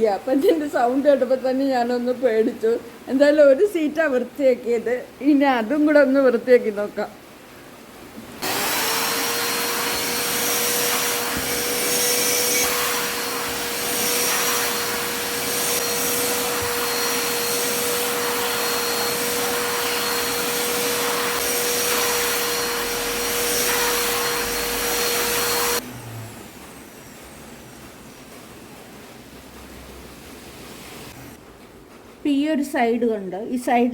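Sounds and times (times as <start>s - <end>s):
vacuum cleaner running: 8.4s - 31.4s.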